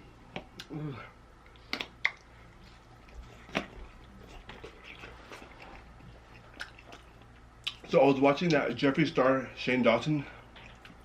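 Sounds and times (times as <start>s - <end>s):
chewing and mouth sounds: 1.4s - 8.6s, 10.4s - 11.0s.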